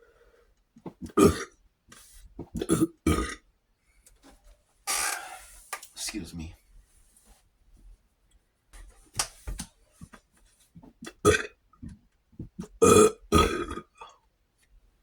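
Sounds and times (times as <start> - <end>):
person burping: 1.0 - 1.6, 2.6 - 3.5, 11.1 - 11.6, 12.6 - 14.1.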